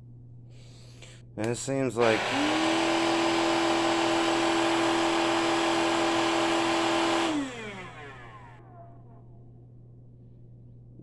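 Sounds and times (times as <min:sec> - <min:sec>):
small electric motor whining: 0:02.0 - 0:09.1
motor spinning down: 0:02.0 - 0:09.2.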